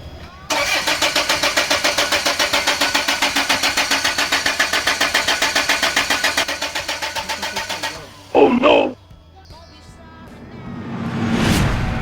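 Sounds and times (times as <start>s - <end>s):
engine cranking on starter motor: 0.5s - 8.9s.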